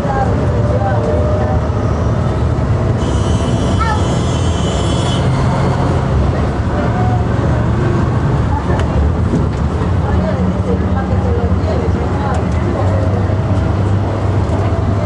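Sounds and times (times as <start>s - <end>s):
faint passenger voices: 0.0s - 5.0s, 5.7s - 15.0s
bus engine and road rumble: 0.0s - 15.0s
high squeal: 3.0s - 5.5s.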